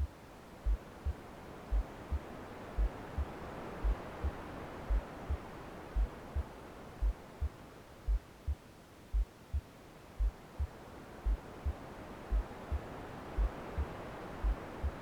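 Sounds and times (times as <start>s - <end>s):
soft white noise hiss: 0.0s - 15.0s
heartbeat double thump: 6.0s - 10.7s, 11.3s - 12.8s, 13.4s - 15.0s.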